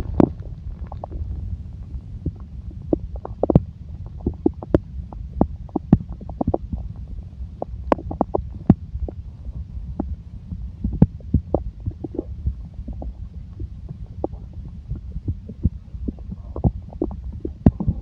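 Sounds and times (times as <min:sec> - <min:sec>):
stomach growling: 0:00.0 - 0:18.0.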